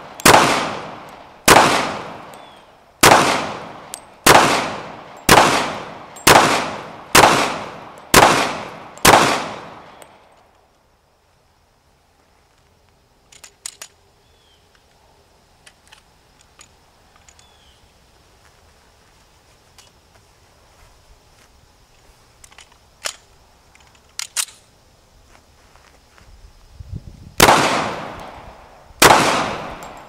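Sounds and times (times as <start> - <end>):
faint bird chirps: 2.3 - 2.8, 14.2 - 14.8, 17.1 - 18.0
pistol mechanical clicks: 13.3 - 14.0, 22.4 - 24.6, 29.0 - 30.0.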